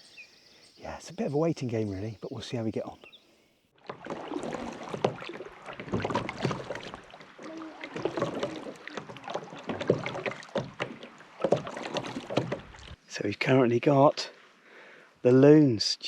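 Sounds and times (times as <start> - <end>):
paddle splashing in water: 3.8 - 13.1.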